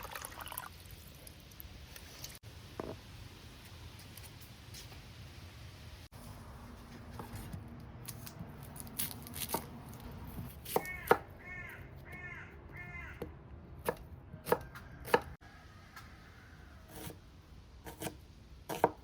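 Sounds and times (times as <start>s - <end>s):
knife chopping on cutting board: 10.4s - 11.3s, 17.8s - 19.0s.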